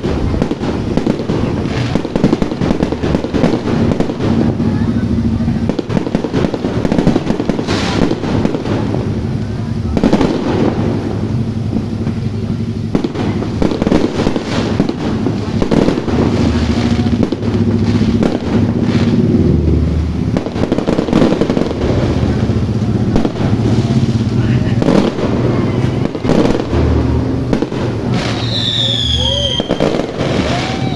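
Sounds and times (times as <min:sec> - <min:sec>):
fireworks bangs and crackles: 0:00.0 - 0:30.9.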